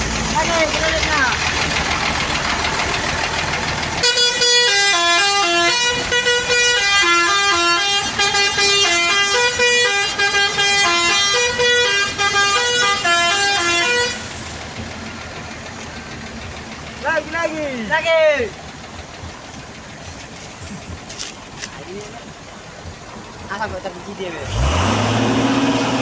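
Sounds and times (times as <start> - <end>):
bus engine running: 0.0 - 26.0
multi-tone musical bus horn: 4.0 - 14.6.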